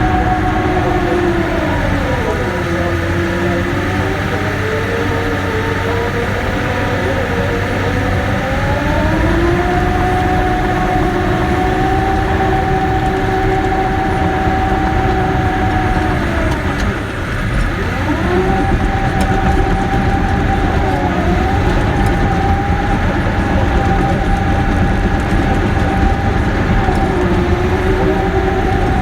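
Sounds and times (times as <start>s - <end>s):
bulldozer running: 0.0s - 29.0s.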